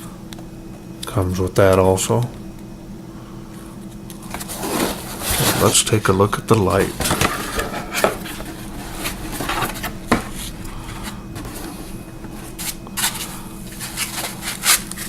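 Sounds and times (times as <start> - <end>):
packaging rubbing: 4.2 - 5.8, 6.7 - 15.0.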